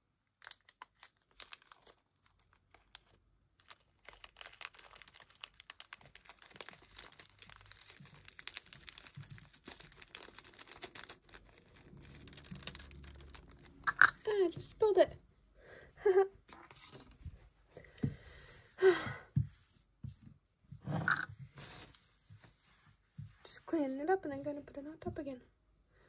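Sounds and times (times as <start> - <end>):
plastic crinkling: 0.3 - 14.2
sprinkles pattering: 3.7 - 13.9.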